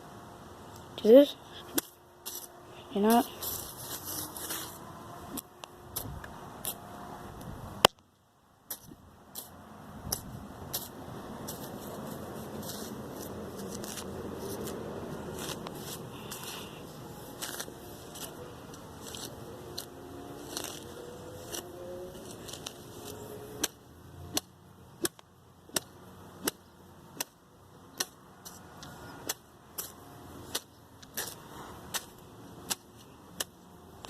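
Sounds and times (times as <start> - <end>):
rustling and scraping: 1.4 - 6.8, 8.7 - 23.7, 28.0 - 33.6
metal whacking weeds: 1.6 - 6.8, 8.7 - 34.0.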